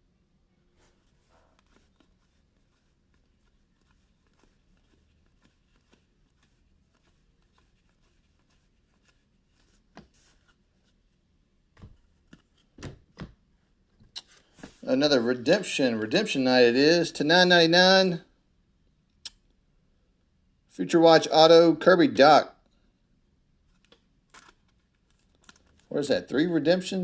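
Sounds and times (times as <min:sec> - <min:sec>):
trading cards rustling and clicking: 0:01.0 - 0:11.0, 0:11.8 - 0:13.4, 0:23.7 - 0:26.0.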